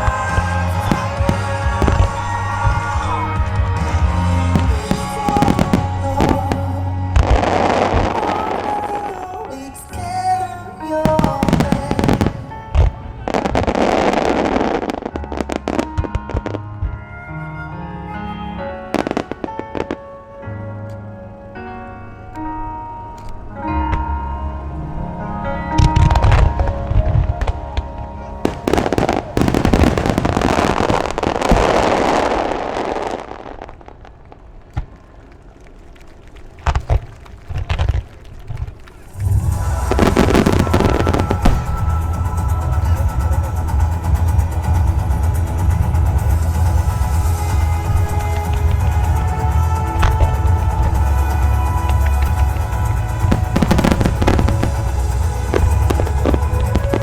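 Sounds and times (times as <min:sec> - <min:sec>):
heavy firework boom: 0:00.0 - 0:10.2, 0:11.0 - 0:16.5, 0:28.2 - 0:32.9, 0:39.0 - 0:57.0
fireworks bangs and crackling: 0:00.0 - 0:17.0, 0:18.8 - 0:20.4, 0:25.8 - 0:57.0
music: 0:00.0 - 0:33.4, 0:39.0 - 0:57.0.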